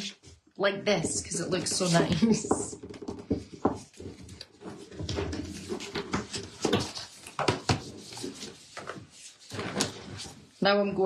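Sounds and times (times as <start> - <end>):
clicks and taps: 1.0 - 4.5.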